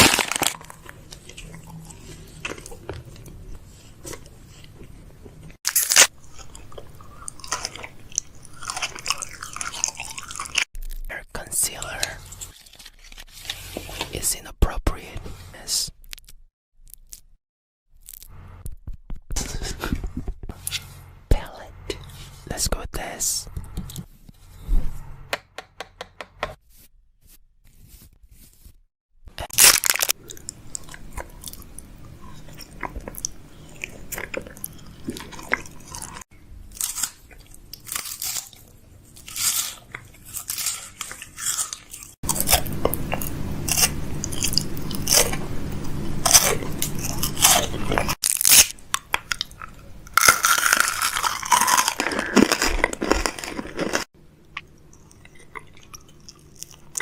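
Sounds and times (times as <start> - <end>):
close crunching and crackling: 0.0 - 5.0, 5.6 - 14.2, 16.0 - 19.8, 29.4 - 57.0.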